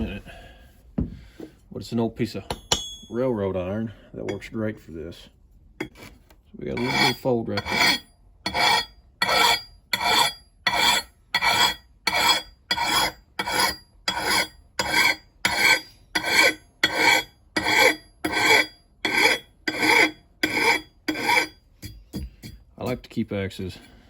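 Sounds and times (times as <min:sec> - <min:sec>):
hand file rasping on axe: 0:06.7 - 0:23.0.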